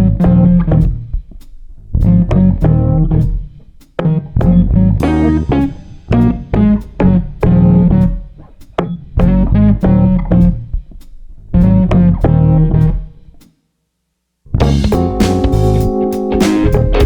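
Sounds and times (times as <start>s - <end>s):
plucked guitar over bass: 0.0s - 1.0s, 2.0s - 3.4s, 4.2s - 8.2s, 9.2s - 10.7s, 11.6s - 13.1s, 14.6s - 17.0s
held chords and drums: 3.2s - 9.4s, 14.6s - 17.0s.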